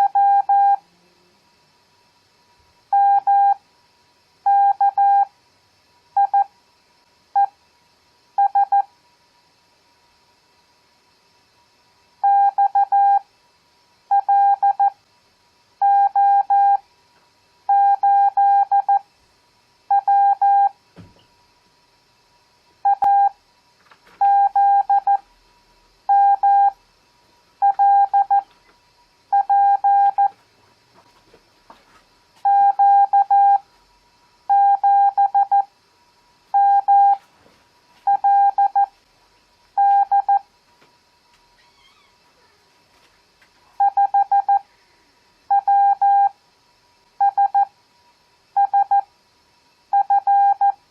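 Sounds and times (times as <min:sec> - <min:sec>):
morse code tone beeping: 0:00.0 - 0:00.8, 0:04.5 - 0:05.3, 0:17.7 - 0:19.0, 0:19.9 - 0:20.7, 0:22.9 - 0:23.4, 0:24.2 - 0:25.2, 0:26.1 - 0:26.8, 0:27.6 - 0:28.4, 0:29.4 - 0:30.3, 0:32.5 - 0:33.6, 0:34.5 - 0:35.7, 0:36.6 - 0:37.2, 0:38.1 - 0:38.9, 0:39.8 - 0:40.4, 0:43.8 - 0:44.6, 0:45.5 - 0:46.3, 0:47.2 - 0:47.7, 0:48.6 - 0:49.0, 0:50.0 - 0:50.8.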